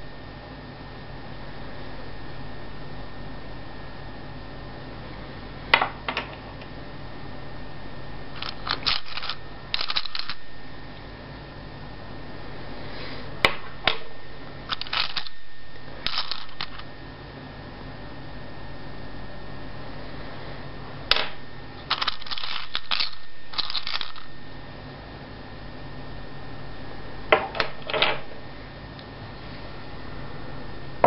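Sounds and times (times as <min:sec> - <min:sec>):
low room hum: 0:00.0 - 0:31.0
short clicks and rustles: 0:08.4 - 0:10.4, 0:21.9 - 0:24.3.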